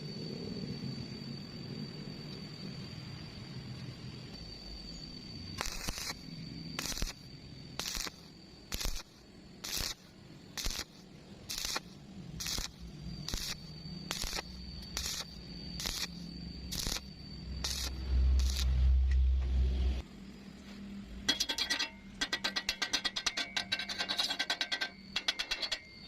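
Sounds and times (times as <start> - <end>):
welding arc bursts: 5.6 - 6.2, 6.8 - 18.8
low hum: 10.2 - 26.0.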